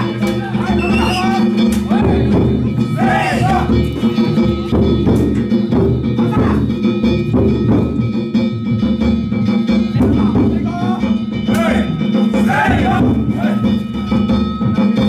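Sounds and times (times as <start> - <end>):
voices calling: 0.0 - 7.0, 10.0 - 14.6
ringing gongs: 0.0 - 15.0
taiko drum: 0.0 - 15.0.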